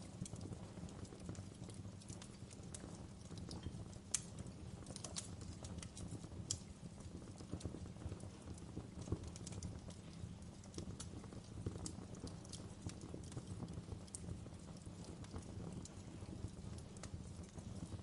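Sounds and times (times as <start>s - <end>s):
low rumble of flames: 0.0s - 18.0s
wood fire snaps and pops: 0.0s - 18.0s.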